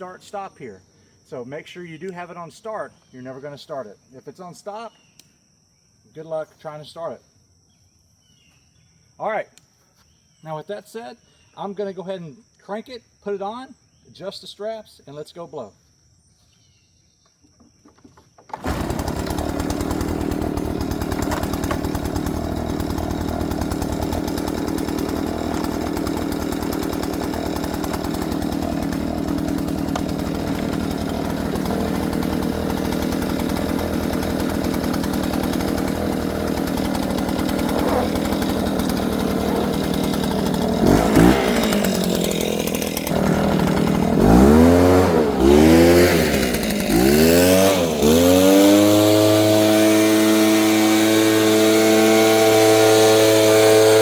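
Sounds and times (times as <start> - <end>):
leaf blower engine revving: 18.5 - 54.0.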